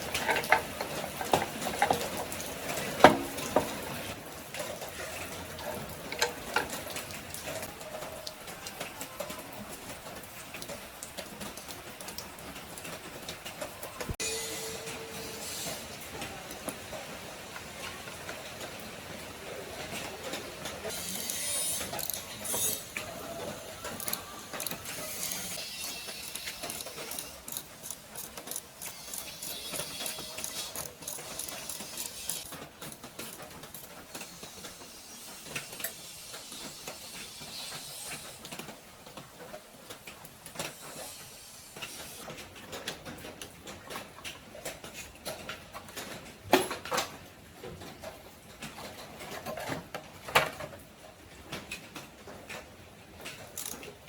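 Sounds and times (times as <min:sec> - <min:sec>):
metal clicking and rattling: 0:00.0 - 0:07.7, 0:20.9 - 0:43.3
steady hiss: 0:14.0 - 0:42.4.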